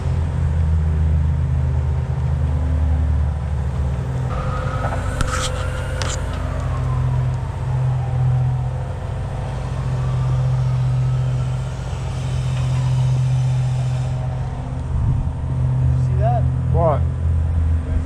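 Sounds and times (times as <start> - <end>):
motor hum of cleaning equipment: 4.3 - 6.4.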